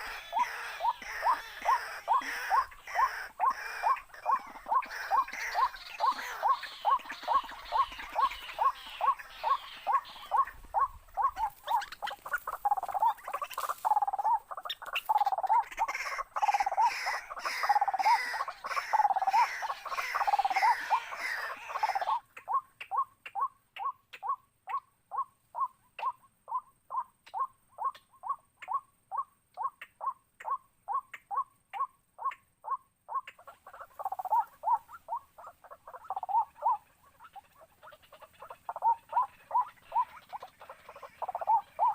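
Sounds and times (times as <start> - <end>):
waterhen harsh calls: 0.0 - 23.5, 32.2 - 41.9.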